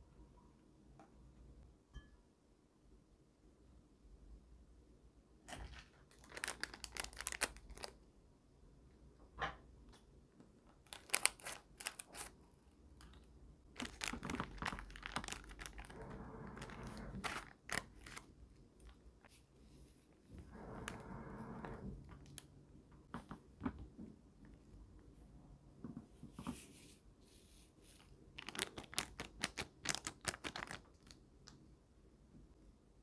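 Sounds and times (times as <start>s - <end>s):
plastic packaging crinkling and tearing: 5.5s - 8.0s, 10.7s - 19.0s, 28.4s - 31.2s.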